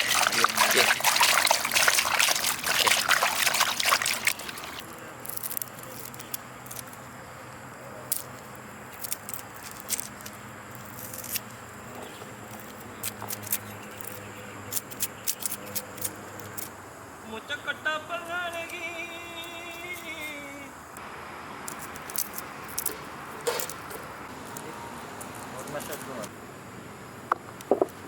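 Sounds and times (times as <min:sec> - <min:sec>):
water pouring and trickling: 0:00.0 - 0:04.8.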